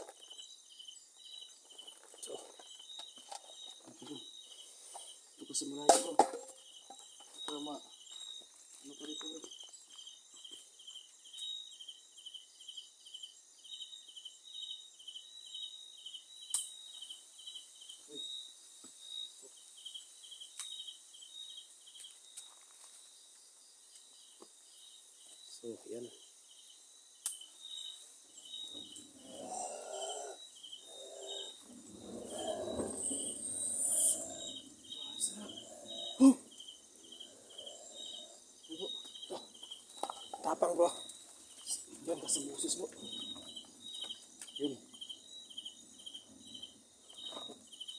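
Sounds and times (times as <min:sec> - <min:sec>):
crickets chirping: 0:00.0 - 0:47.9
high insect trill: 0:00.0 - 0:47.9
low rustling: 0:30.9 - 0:38.4.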